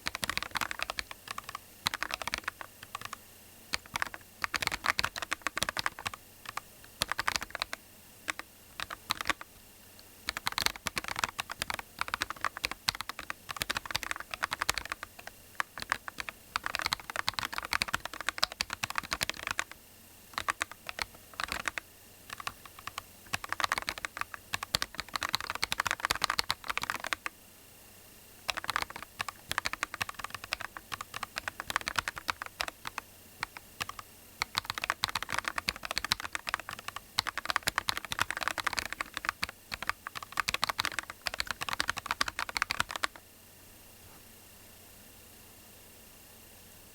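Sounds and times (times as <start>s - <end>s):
mechanical keyboard typing: 0.0s - 27.3s, 28.4s - 43.2s.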